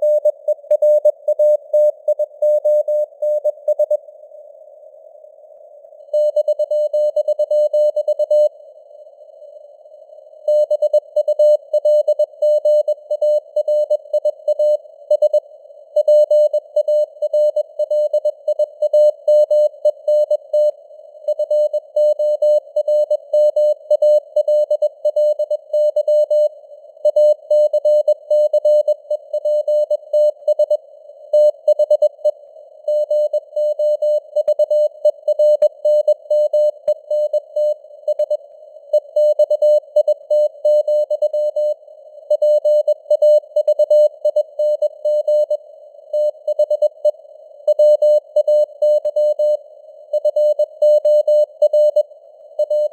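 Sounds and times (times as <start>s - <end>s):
static clicks: 35.5s - 37.4s.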